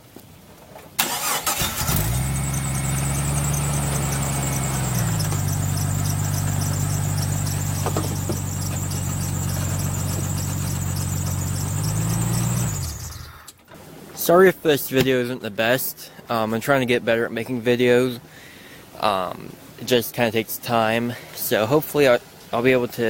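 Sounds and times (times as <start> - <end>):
car engine starting and idling: 1.0 - 13.9
faint high whine: 1.8 - 13.6.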